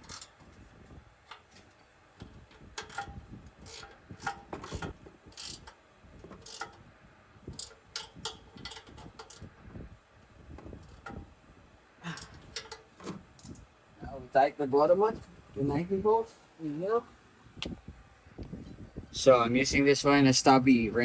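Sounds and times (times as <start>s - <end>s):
socket ratchet clicking: 2.8s - 5.8s.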